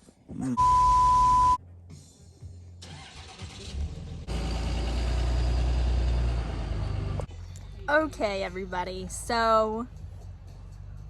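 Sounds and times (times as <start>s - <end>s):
high beep tone: 0.6s - 1.6s.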